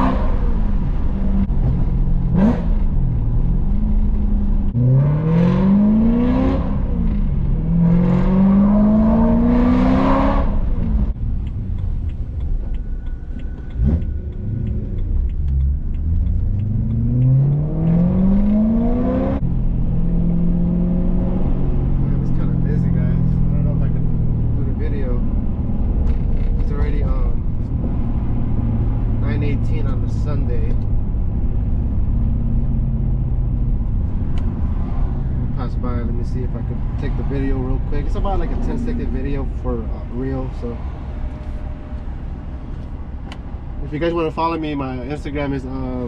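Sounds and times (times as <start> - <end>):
car engine accelerating through gears: 0.0 - 46.0
faint ticking: 11.1 - 18.5.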